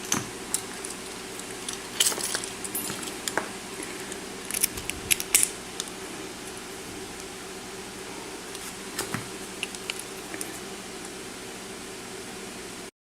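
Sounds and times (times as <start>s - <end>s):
metallic clicks and scrapes: 4.1s - 5.9s.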